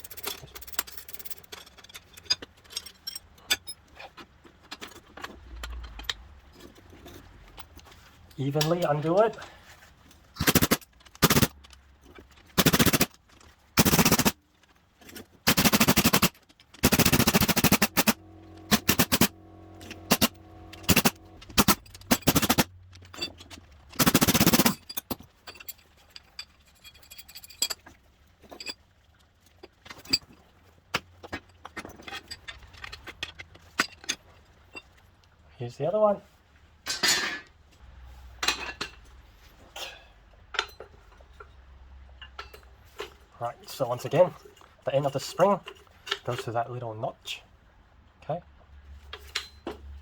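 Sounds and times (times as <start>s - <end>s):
metal clinks: 0.0s - 3.9s, 15.0s - 28.8s
impact wrench bursts: 10.4s - 11.5s, 12.6s - 13.1s, 13.8s - 14.4s, 15.5s - 22.7s, 23.9s - 25.2s.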